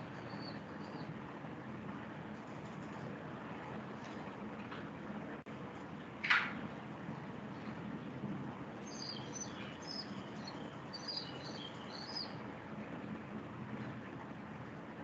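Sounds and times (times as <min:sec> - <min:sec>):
small birds chirping: 0:00.0 - 0:01.1, 0:08.8 - 0:12.4
low background hum: 0:00.0 - 0:15.0.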